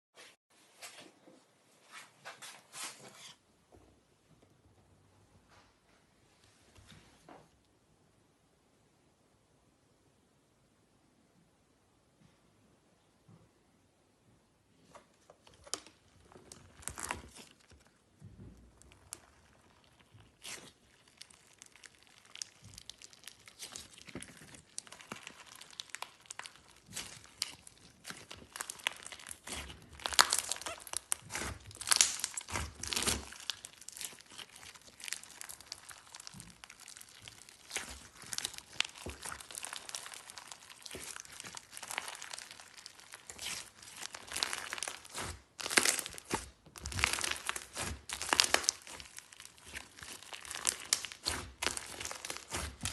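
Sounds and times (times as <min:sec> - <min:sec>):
hands squishing slime: 0:15.5 - 0:52.9.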